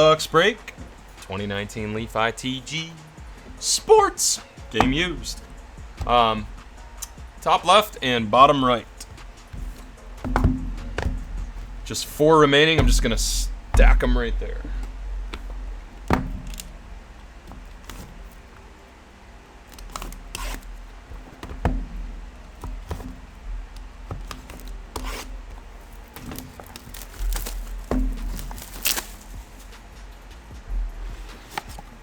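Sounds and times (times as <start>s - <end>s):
card packs clicking and tapping: 0.0s - 32.0s
packaging tearing and crinkling: 24.3s - 29.8s.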